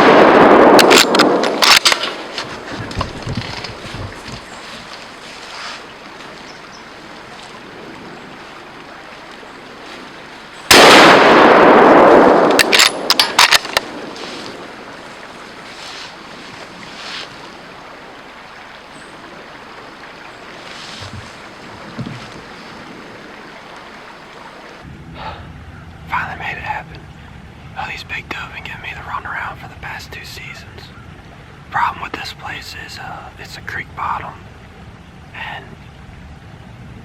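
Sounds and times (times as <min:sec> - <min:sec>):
rifle shot: 0:00.0 - 0:02.3, 0:10.7 - 0:14.2.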